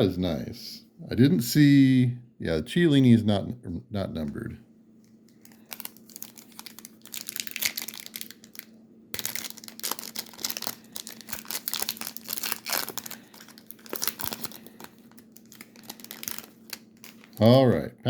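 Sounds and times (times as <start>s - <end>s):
card pack wrapper crinkling: 5.3s - 17.5s.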